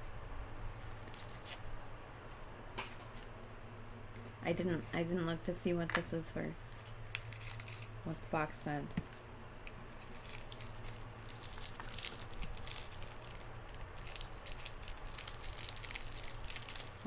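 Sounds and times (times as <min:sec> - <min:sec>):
steady low hum: 0:00.0 - 0:17.0
packaging rustling and crinkling: 0:07.1 - 0:08.0, 0:09.0 - 0:17.0.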